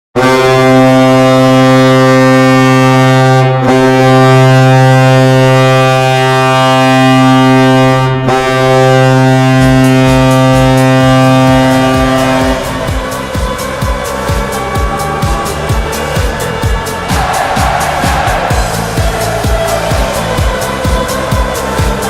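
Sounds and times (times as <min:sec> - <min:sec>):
loud air horn blasts: 0:00.2 - 0:22.0
drum beat: 0:10.1 - 0:22.0.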